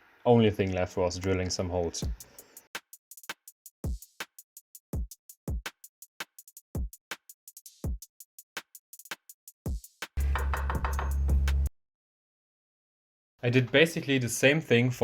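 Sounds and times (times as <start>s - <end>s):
electronic music drum-machine beat: 2.0s - 11.7s.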